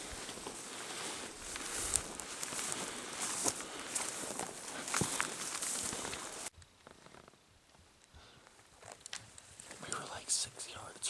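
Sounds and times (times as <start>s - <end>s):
footsteps on dry trail: 0.0s - 7.3s.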